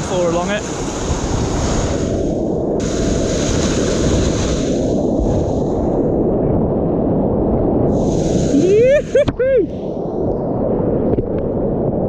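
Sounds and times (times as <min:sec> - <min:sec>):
white water rushing: 0:00.0 - 0:02.2, 0:08.0 - 0:09.8.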